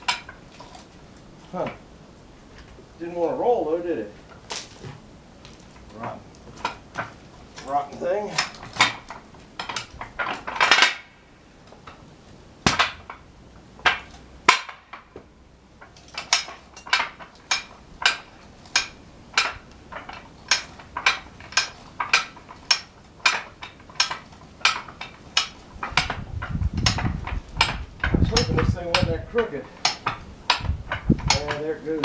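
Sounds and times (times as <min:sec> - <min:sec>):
ratchet jack metallic clanks: 0:05.8 - 0:11.1, 0:13.8 - 0:15.2, 0:15.8 - 0:32.0.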